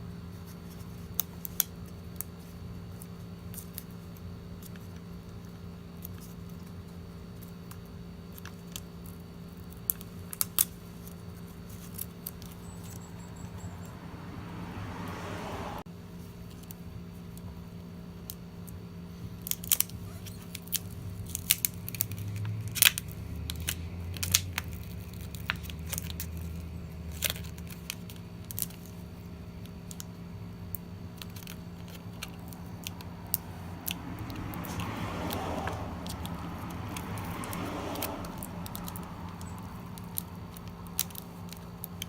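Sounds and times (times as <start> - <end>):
low electrical hum: 0.0 - 42.0
small parts and tools clicking: 19.4 - 42.0.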